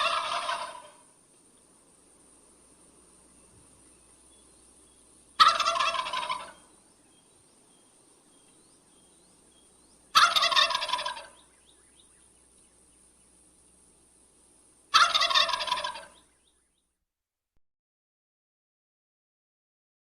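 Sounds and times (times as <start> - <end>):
turkey gobbling: 0.0 - 1.1, 5.4 - 6.7, 10.1 - 11.5, 14.9 - 16.3.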